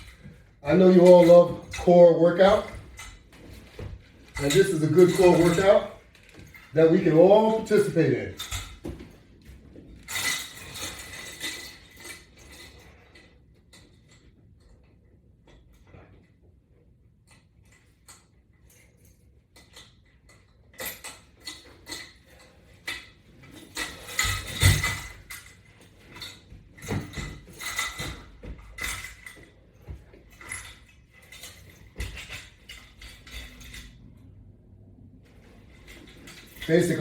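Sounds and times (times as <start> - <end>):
metal clicks and clinks: 0.0 - 9.0, 17.3 - 29.6, 30.3 - 34.4, 35.4 - 37.0.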